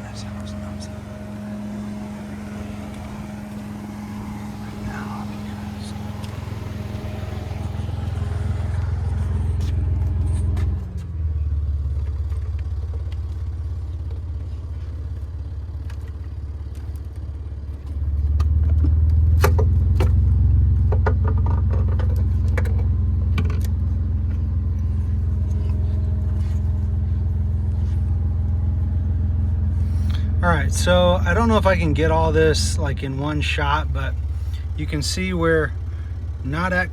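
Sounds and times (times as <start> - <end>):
subwoofer bass drone: 0.0 - 11.6, 20.1 - 36.9.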